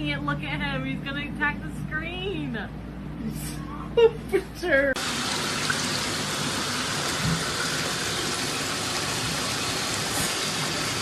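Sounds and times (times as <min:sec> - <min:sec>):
running water: 0:05.0 - 0:11.0.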